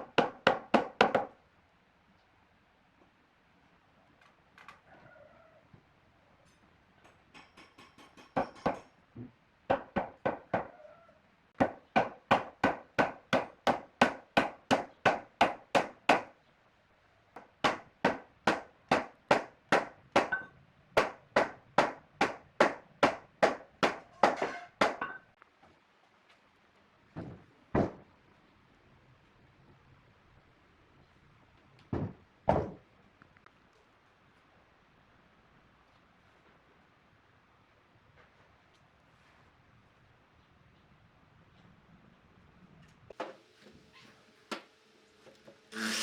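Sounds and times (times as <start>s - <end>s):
hammering on wood: 0.0s - 1.4s, 7.3s - 8.9s, 9.7s - 10.7s, 11.6s - 16.4s, 17.4s - 25.2s.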